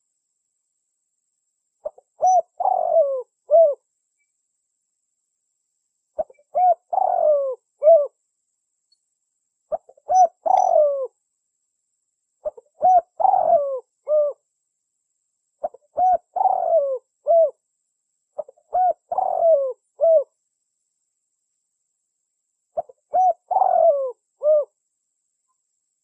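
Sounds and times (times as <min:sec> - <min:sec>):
dove cooing: 0:01.8 - 0:03.8, 0:06.2 - 0:08.2, 0:09.7 - 0:11.2, 0:12.4 - 0:14.4, 0:15.6 - 0:17.6, 0:18.4 - 0:20.3, 0:22.8 - 0:24.8.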